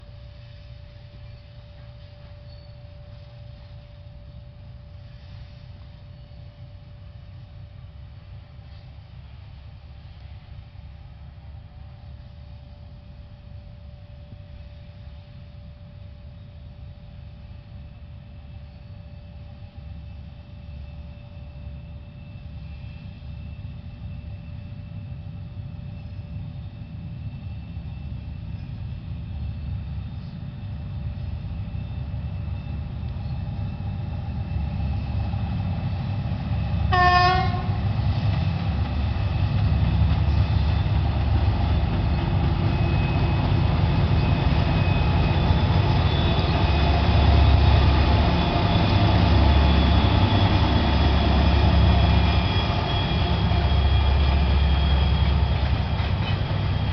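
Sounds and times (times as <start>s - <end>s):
diesel locomotive engines rumbling: 0.0s - 56.9s
locomotive horn blast: 36.9s - 37.8s.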